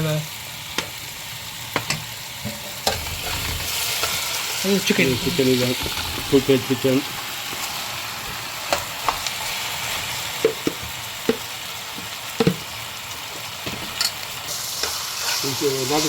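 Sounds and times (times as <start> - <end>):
chicken sizzling in a pan: 0.0 - 16.0
utensil knocking against pan: 12.4 - 12.6.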